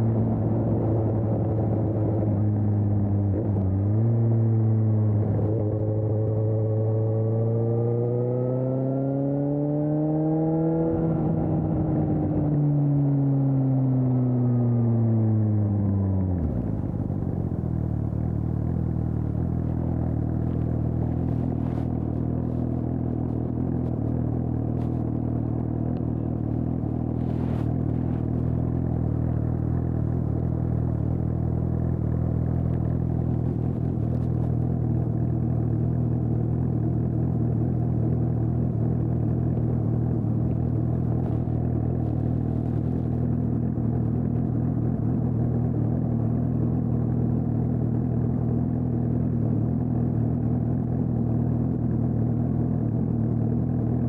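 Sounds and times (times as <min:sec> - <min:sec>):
motorcycle engine idling: 0:16.6 - 0:54.0.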